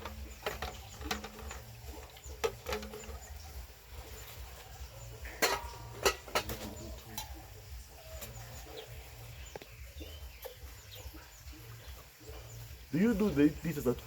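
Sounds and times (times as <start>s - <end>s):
dishes and utensils clinking: 0.0s - 3.5s, 5.1s - 7.4s
birds chirping faintly: 0.0s - 14.0s.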